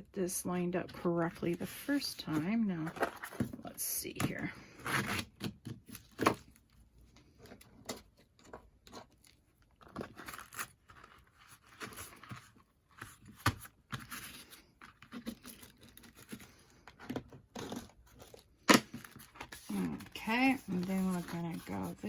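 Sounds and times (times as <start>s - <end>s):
paper rustling and scraping: 7.4s - 22.0s.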